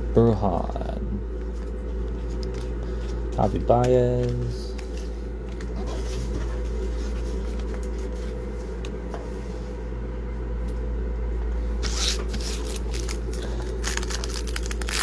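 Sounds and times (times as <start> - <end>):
trading cards being flipped: 1.4 - 8.1, 11.8 - 15.0.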